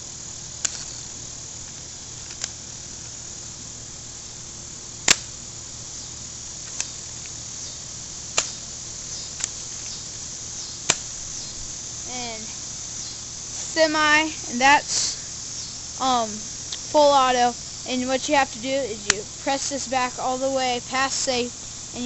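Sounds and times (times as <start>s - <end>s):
airsoft gun firing snaps: 5.0s - 5.4s, 8.3s - 8.6s, 10.8s - 11.2s.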